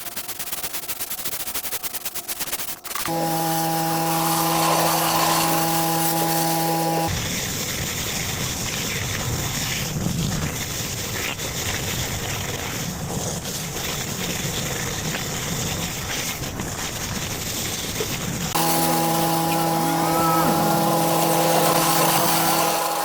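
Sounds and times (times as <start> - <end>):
pressure washer jet hissing: 3.1 - 7.1, 18.6 - 23.0.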